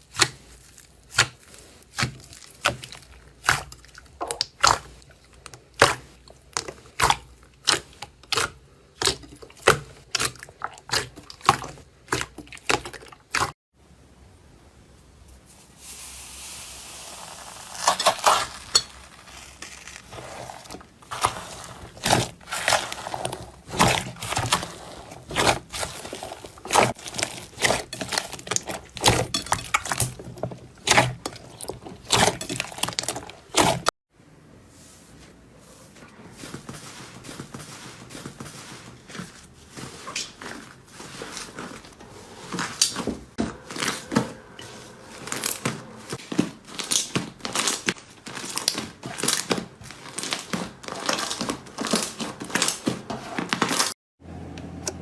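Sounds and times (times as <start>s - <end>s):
slime squishing hiss: 15.6s - 18.7s.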